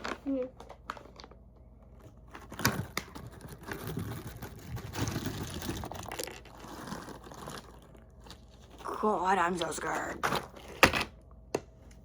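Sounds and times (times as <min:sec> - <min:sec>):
snack packaging crinkling: 0:00.0 - 0:09.6.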